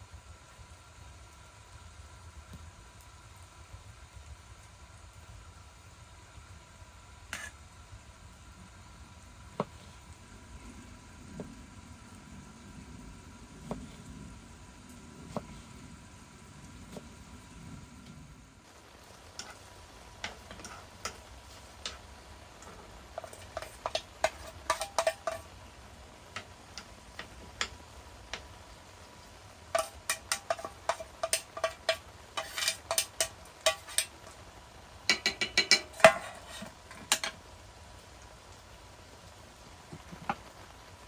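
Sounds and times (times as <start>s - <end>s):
metallic clinks and taps: 35.1s - 37.4s.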